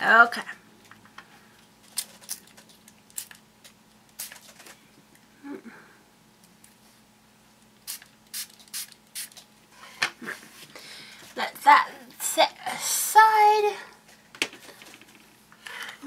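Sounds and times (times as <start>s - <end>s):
spray bottle squirting water: 4.2s - 4.6s, 7.8s - 9.4s.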